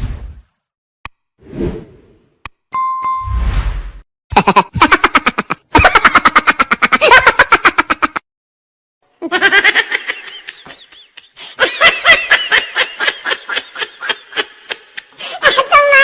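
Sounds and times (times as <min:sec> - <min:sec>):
rapid laughter: 0:04.3 - 0:08.2.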